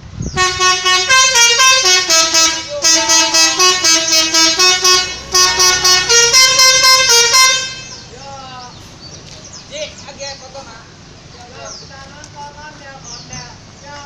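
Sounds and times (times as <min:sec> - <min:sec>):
multi-tone musical air horn: 0:00.4 - 0:08.0.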